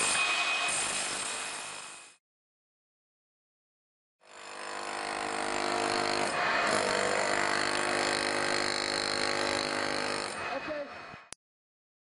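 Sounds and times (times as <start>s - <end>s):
power tool motor running: 4.2s - 10.5s.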